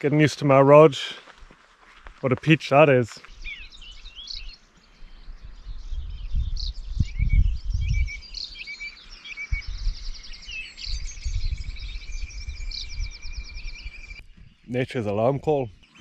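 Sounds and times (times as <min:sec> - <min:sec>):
birds singing: 0:02.2 - 0:16.0
bird trill: 0:03.2 - 0:16.0.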